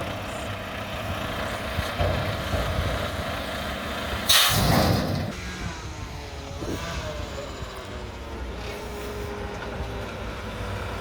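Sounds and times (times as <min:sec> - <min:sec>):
truck diesel engine running: 0:00.0 - 0:11.0
air brake hiss: 0:04.3 - 0:04.9.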